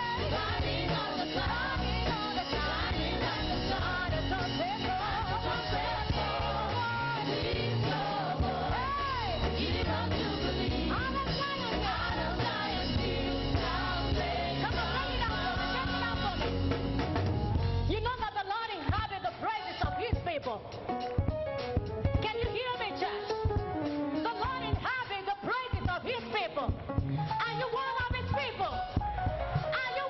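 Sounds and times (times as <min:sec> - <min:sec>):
voices singing: 0:00.0 - 0:16.6
band accompaniment with bass: 0:00.0 - 0:30.0.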